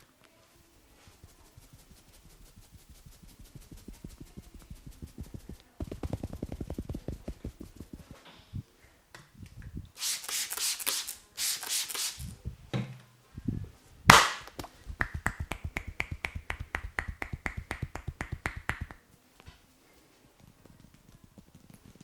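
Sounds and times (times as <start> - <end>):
rubbing hair: 0.9 - 8.2, 14.6 - 19.0
hands tapping on head: 1.2 - 8.2, 14.1 - 19.0
hand slap: 14.1 - 19.0.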